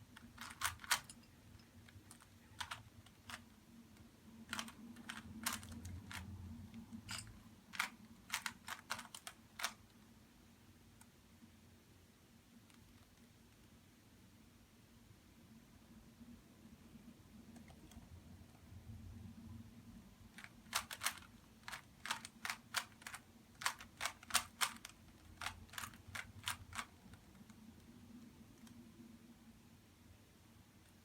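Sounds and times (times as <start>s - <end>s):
puzzle cube plastic clicks: 0.1s - 3.5s, 4.4s - 9.9s, 20.4s - 27.9s.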